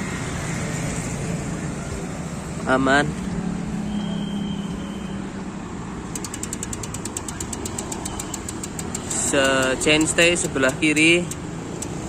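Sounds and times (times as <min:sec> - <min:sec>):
traffic hum: 0:00.0 - 0:12.0
bicycle freehub ratchet ticking: 0:06.1 - 0:12.0.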